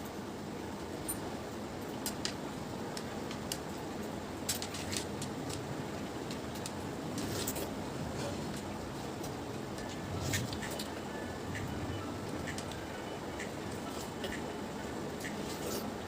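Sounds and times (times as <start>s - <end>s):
steady background hum: 0.0s - 16.0s
small clicks and taps: 2.0s - 3.8s, 4.4s - 6.8s.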